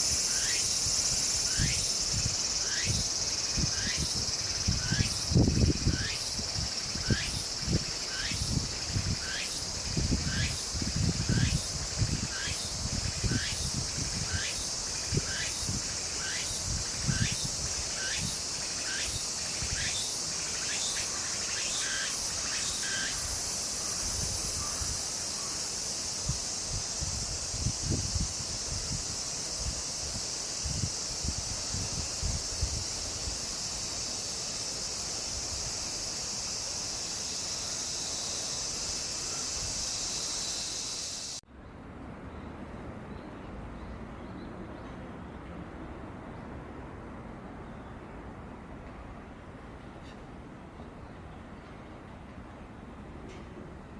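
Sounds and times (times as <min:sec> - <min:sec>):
insect chirping: 0:00.0 - 0:41.4
insects buzzing: 0:00.0 - 0:41.4.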